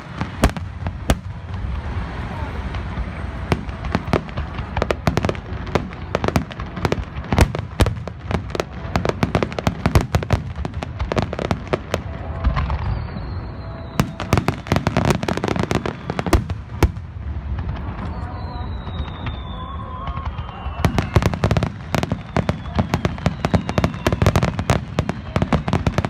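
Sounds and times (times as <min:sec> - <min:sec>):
fireworks bangs and crackles: 0:00.0 - 0:26.0
high whistle sliding down: 0:12.7 - 0:14.5, 0:18.0 - 0:24.7.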